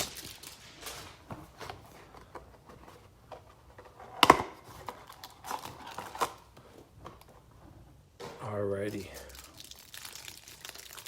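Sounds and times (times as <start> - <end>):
cards clicking and rustling: 0.0 - 7.3.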